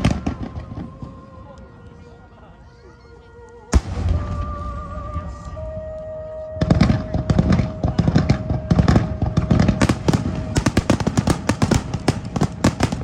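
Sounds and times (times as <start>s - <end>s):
fireworks crackling and banging: 6.6s - 13.0s.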